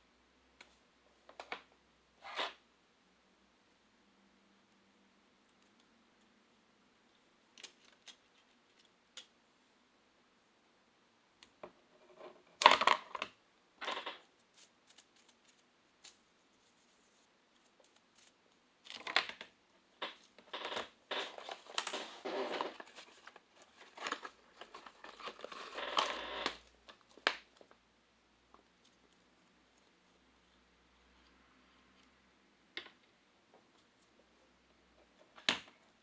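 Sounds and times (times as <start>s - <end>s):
plastic crinkling and rustling: 13.9s - 27.7s.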